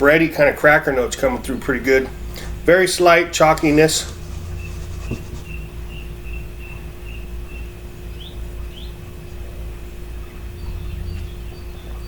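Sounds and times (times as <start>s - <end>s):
steady low hum: 0.0s - 12.0s
small bird chirping: 4.0s - 12.0s.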